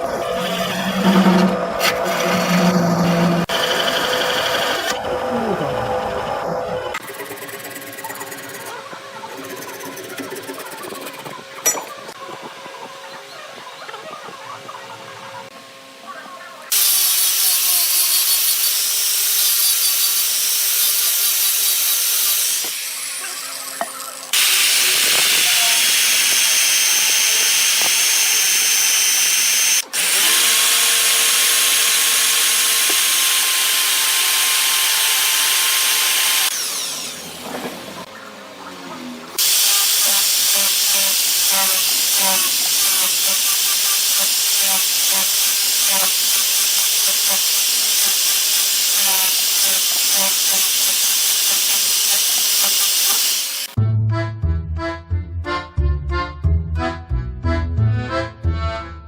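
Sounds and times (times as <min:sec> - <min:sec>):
lathe tool cutting wood: 0:00.0 - 0:08.6, 0:16.7 - 0:53.8.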